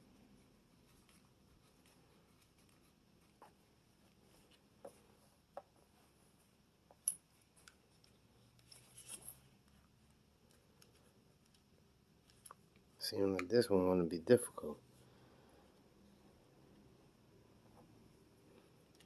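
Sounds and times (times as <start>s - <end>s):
small metal clicks and scrapes: 7.1s - 9.9s.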